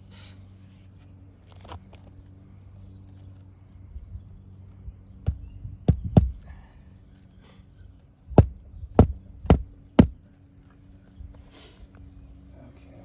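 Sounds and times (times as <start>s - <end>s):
hammer striking roofing nails: 5.3s - 6.4s, 8.4s - 10.2s.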